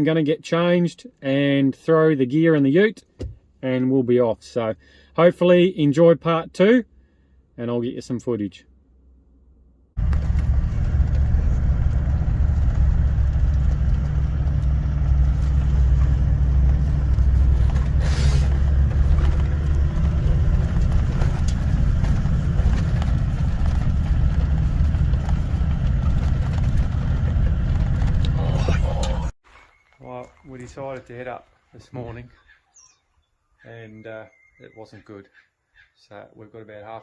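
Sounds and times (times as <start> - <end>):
engine and road rumble: 8.7 - 29.5.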